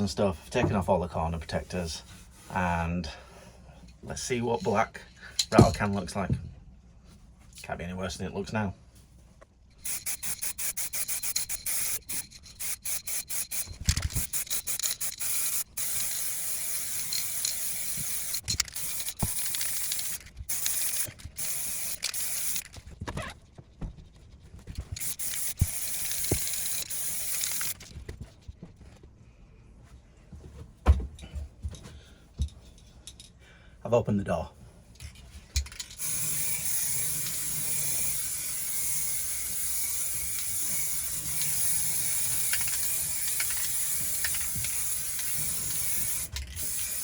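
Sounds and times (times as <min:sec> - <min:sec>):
spray paint can hissing: 0:09.8 - 0:22.8, 0:25.0 - 0:27.9, 0:36.0 - 0:47.0.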